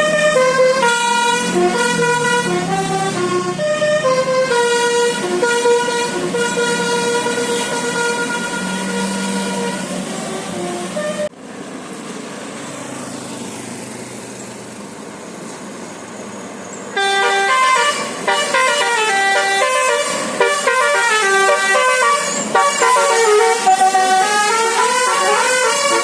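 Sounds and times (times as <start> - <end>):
bus musical air horn melody: 0.0 - 11.3, 17.0 - 26.0.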